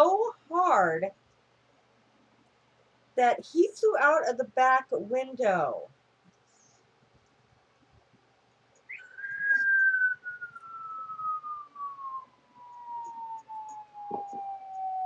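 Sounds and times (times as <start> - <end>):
cartoon falling whistle: 8.9 - 15.0.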